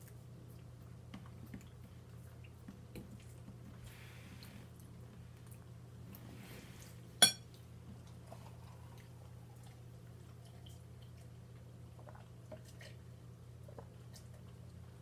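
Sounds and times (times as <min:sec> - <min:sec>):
faint eating sounds: 0:00.0 - 0:15.0
low steady hum: 0:00.0 - 0:15.0
tableware clinking: 0:07.2 - 0:07.4.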